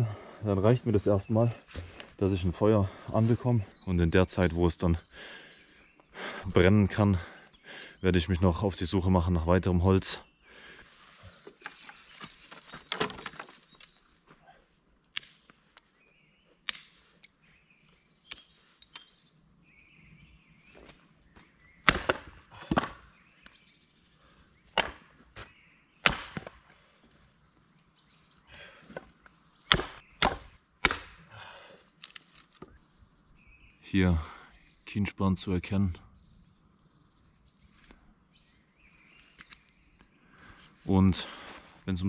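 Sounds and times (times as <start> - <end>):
axe chopping logs: 16.6 - 17.0, 21.8 - 23.1, 24.7 - 25.2, 26.0 - 26.7, 28.9 - 31.3.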